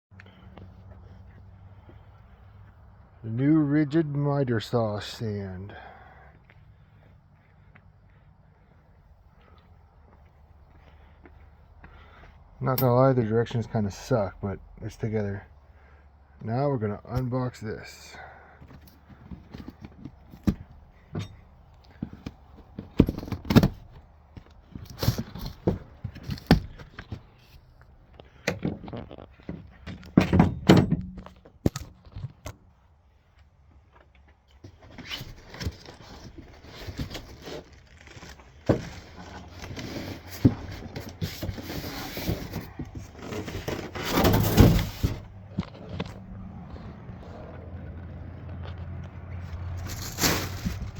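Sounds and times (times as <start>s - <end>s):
box knocks and thunks: 22.0s - 23.9s, 24.8s - 27.2s, 29.6s - 31.2s, 39.7s - 45.9s
packaging rustling and scraping: 24.6s - 27.6s, 34.7s - 50.9s.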